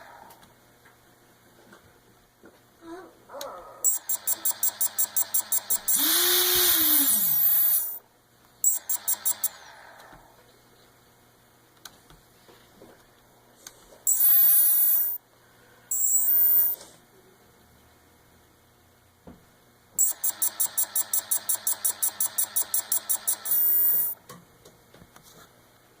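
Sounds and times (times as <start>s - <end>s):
pulsing motor: 3.9s - 8.0s, 8.6s - 9.7s, 14.1s - 15.2s, 15.9s - 16.8s, 20.0s - 24.2s.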